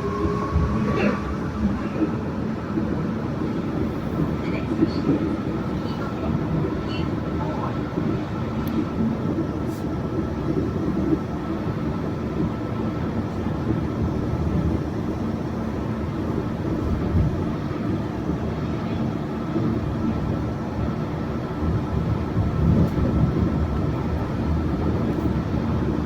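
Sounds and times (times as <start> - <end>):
train tyres rumbling on guideway: 0.0 - 26.0.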